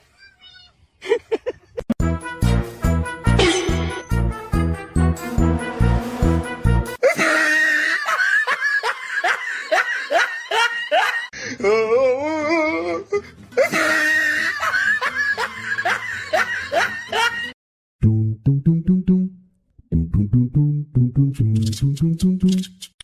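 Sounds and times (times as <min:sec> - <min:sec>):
laughter in falling peals: 0:01.0 - 0:02.0, 0:07.0 - 0:11.3, 0:13.6 - 0:17.6.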